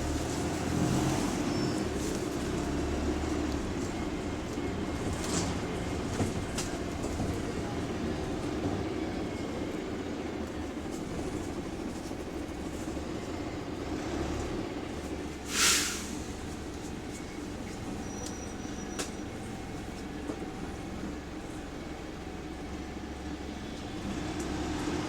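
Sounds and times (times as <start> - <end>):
bus engine and road rumble: 0.0 - 25.0
air brake hiss: 15.4 - 16.4.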